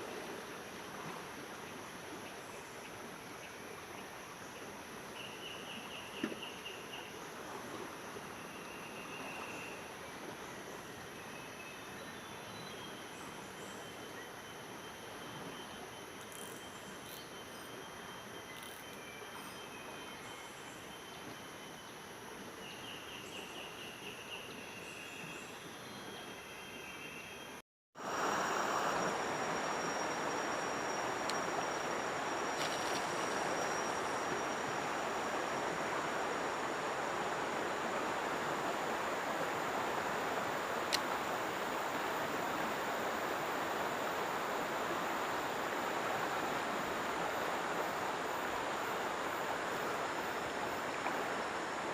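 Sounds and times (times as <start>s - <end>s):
faint ticks: 16.2s - 17.8s, 18.5s - 19.6s, 40.9s - 41.1s
river flowing: 28.0s - 51.9s.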